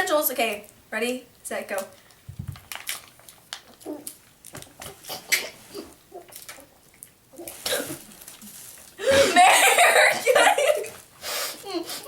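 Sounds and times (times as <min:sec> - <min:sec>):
foil pouch crinkling: 0:02.0 - 0:05.1, 0:07.4 - 0:09.0.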